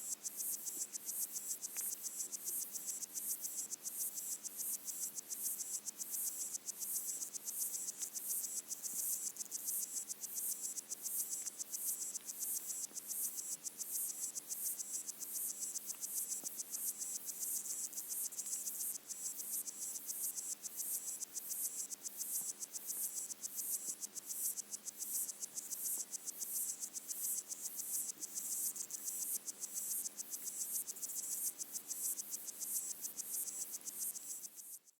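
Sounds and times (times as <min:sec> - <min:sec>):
water insects chirring underwater: 0:00.0 - 0:34.7.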